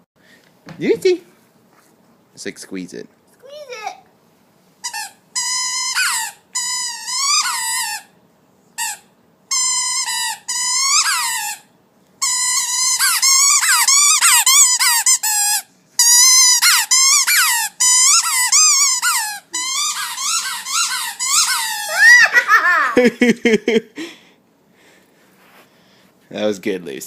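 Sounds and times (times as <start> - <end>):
squeaky toy squealing: 4.8 - 8.1, 8.8 - 22.2.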